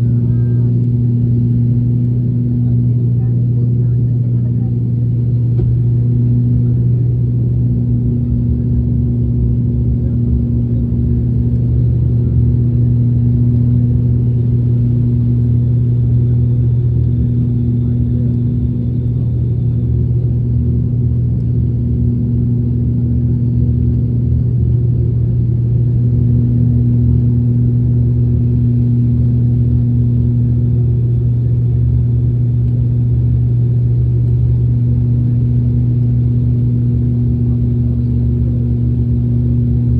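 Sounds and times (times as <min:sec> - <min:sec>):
airplane cabin engine drone: 0:00.0 - 0:39.9.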